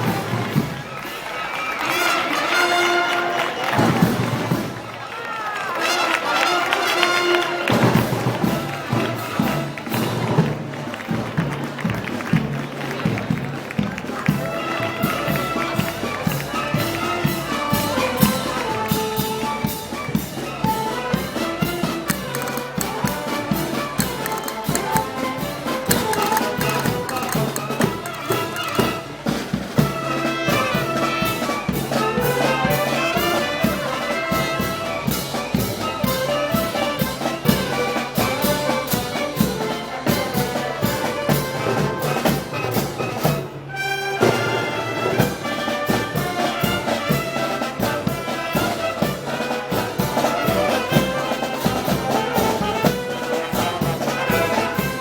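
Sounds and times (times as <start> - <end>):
steady drum beat: 21.9 - 29.7
trumpets and trombones playing: 43.7 - 55.0.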